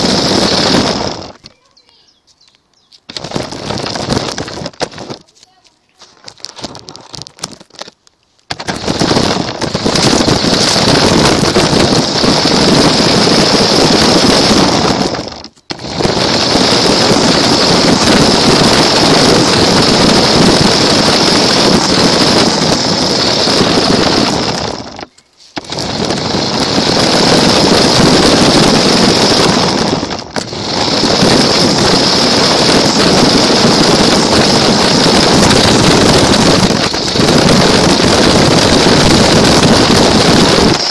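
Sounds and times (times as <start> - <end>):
wheels rattling: 0.0 - 40.9
toy car motor whining: 8.6 - 40.9.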